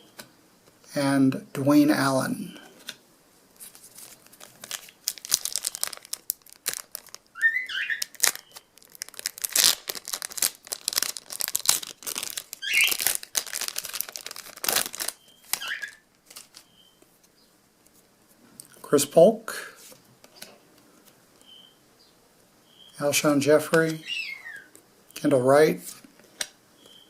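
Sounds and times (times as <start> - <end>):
wrapper being torn open: 3.6 - 16.6
card pack wrapper crinkling: 3.6 - 16.7.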